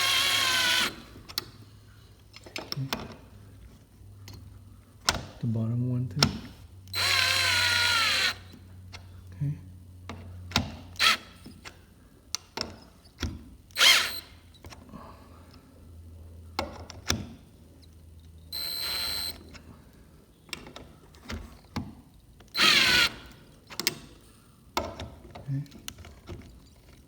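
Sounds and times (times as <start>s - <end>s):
power drill driving screws: 0.0s - 1.1s, 6.9s - 8.5s, 11.0s - 11.3s, 13.8s - 14.3s, 18.6s - 19.4s, 22.5s - 23.4s.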